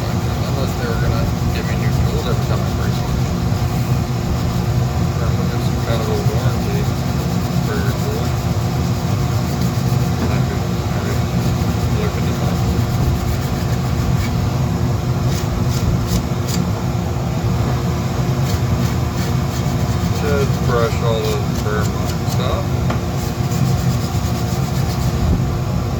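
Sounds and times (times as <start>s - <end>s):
rotary tool carving wood: 6.1s - 14.4s, 15.2s - 16.7s, 18.4s - 22.6s, 23.2s - 25.2s.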